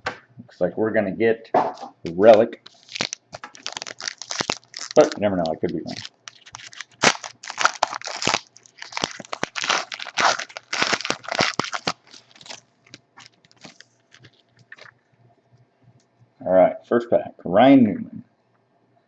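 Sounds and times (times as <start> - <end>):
foil wrapper tearing and crinkling: 2.6 - 14.9.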